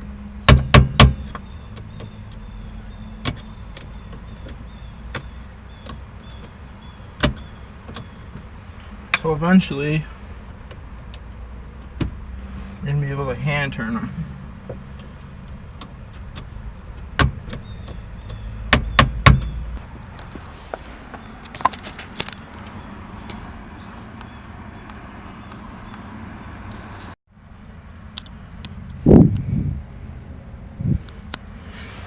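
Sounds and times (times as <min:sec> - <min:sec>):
crickets chirping: 0:00.2 - 0:00.5, 0:01.1 - 0:04.5, 0:05.2 - 0:05.5, 0:08.5 - 0:08.9, 0:14.3 - 0:19.0, 0:19.8 - 0:20.3, 0:24.7 - 0:25.0, 0:25.8 - 0:26.0, 0:27.4 - 0:31.6.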